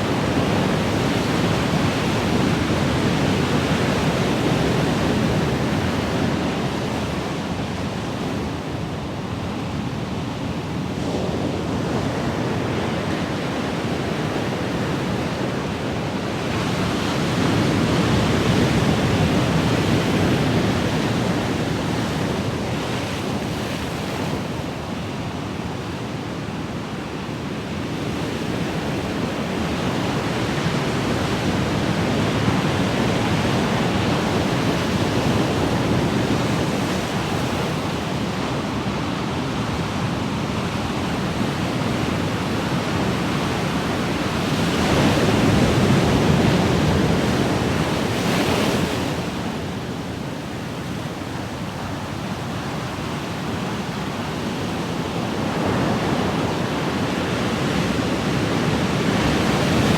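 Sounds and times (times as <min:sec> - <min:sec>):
ocean waves washing on shore: 0:00.0 - 0:59.9.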